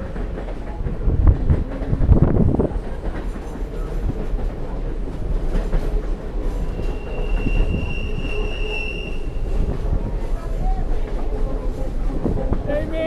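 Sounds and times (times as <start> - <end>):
train rumbling on rails: 0.0 - 13.0
high wheel squeal: 6.5 - 10.1.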